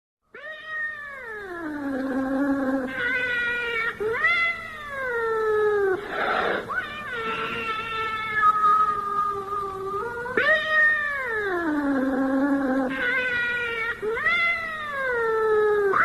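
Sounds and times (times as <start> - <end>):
cat yowling: 2.6 - 16.0.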